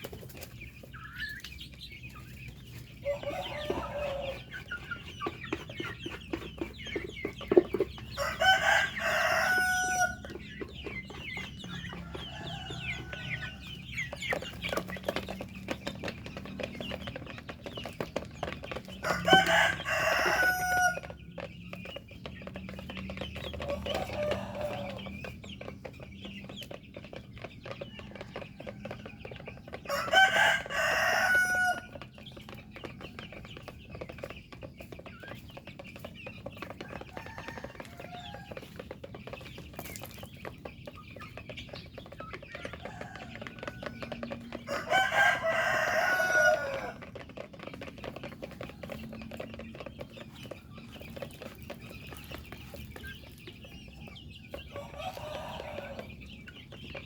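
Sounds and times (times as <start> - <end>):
chickens clucking: 0.0 - 57.0
rooster crowing: 3.0 - 4.5, 8.2 - 10.3, 19.0 - 21.2, 23.7 - 25.0, 29.9 - 32.0, 37.1 - 38.5, 42.5 - 47.0, 54.7 - 56.2.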